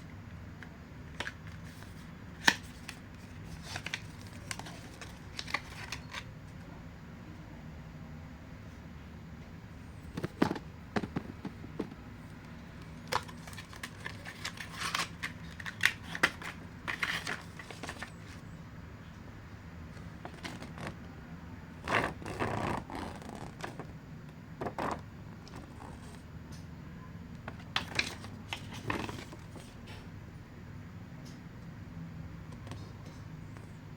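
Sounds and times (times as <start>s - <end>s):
steady low hum: 0.0s - 33.9s
packaging rustling: 1.2s - 6.3s, 12.8s - 18.4s.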